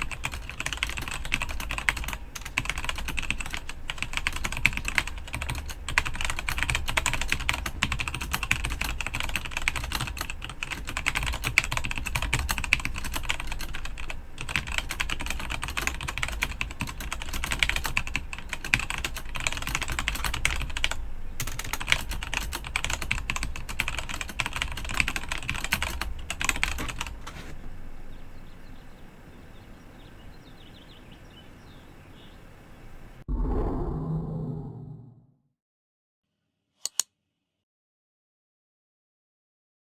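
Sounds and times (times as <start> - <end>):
mechanical keyboard typing: 0.0 - 27.3.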